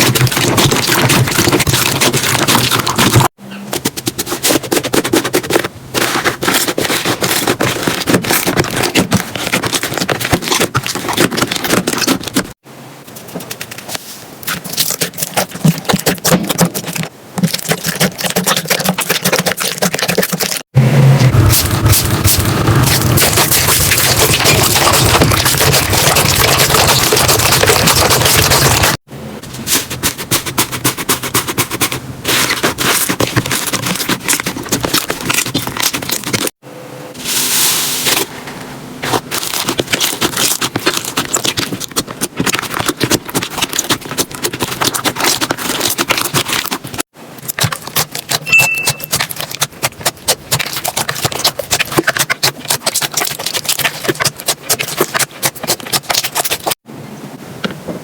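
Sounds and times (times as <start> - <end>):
slime crackling and popping: 39.1 - 56.8.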